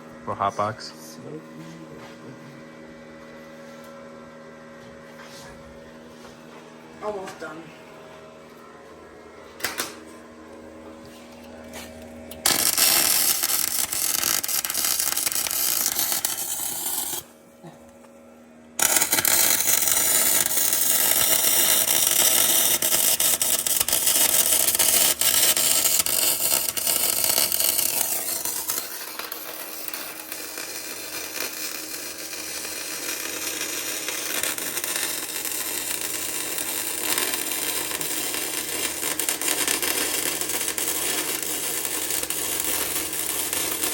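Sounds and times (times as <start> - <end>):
electric arc welding hiss: 12.4 - 17.3, 18.8 - 43.9.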